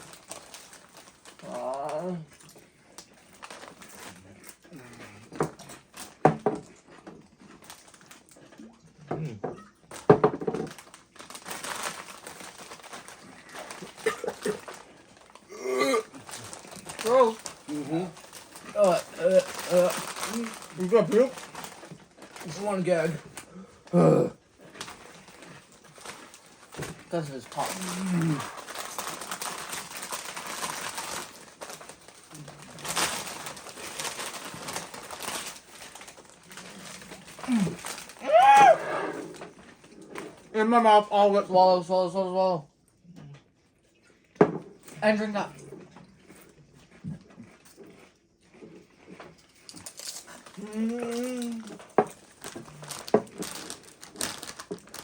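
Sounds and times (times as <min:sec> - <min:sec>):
chips being crunched and chewed: 0:00.0 - 0:08.8, 0:09.9 - 0:23.5, 0:24.6 - 0:40.5, 0:49.0 - 0:55.0
person gagging and retching: 0:13.6 - 0:14.8, 0:15.4 - 0:21.2, 0:23.9 - 0:24.4, 0:27.5 - 0:28.8, 0:37.3 - 0:39.6, 0:50.5 - 0:54.4.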